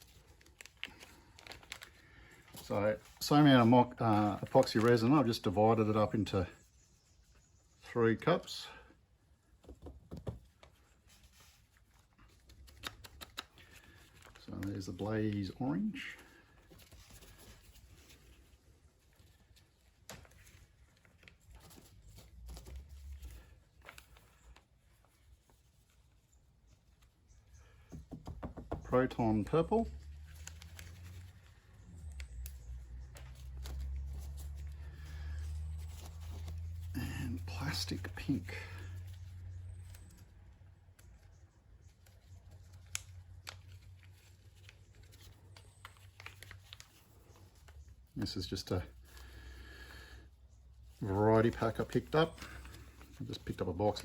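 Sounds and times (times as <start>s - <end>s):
plastic bags and cups rustling: 0.0s - 6.1s
plastic bags and cups handled: 0.0s - 6.2s, 9.2s - 54.0s.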